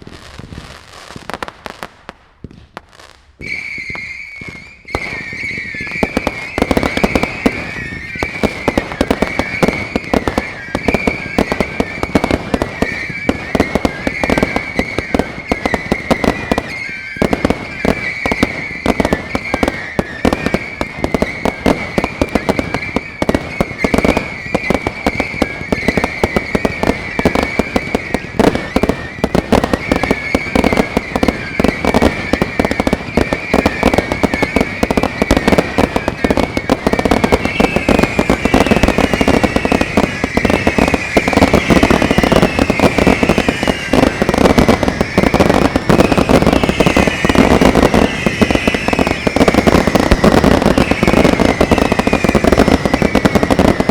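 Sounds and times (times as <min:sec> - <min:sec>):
fireworks bangs and crackling: 0:00.0 - 0:53.9
high wavering whistle: 0:03.4 - 0:08.3, 0:44.9 - 0:53.3.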